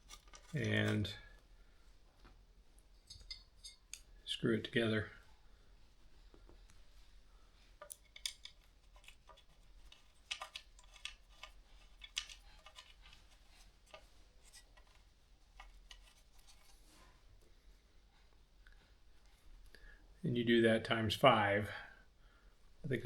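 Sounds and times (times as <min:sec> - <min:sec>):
clicks and metallic scrapes: 0:00.0 - 0:01.2, 0:03.0 - 0:04.1, 0:07.8 - 0:15.0.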